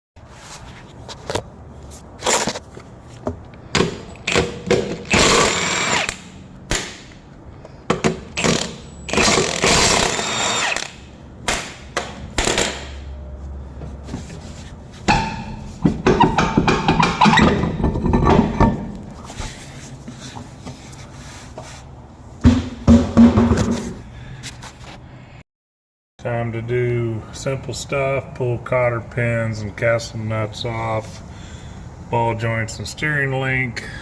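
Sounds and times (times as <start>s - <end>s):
handheld power tool running: 4.2s - 6.2s, 8.4s - 11.0s.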